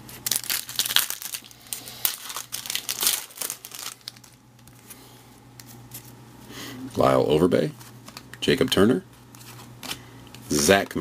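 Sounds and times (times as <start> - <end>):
card pack wrapper crinkling: 0.0 - 4.9.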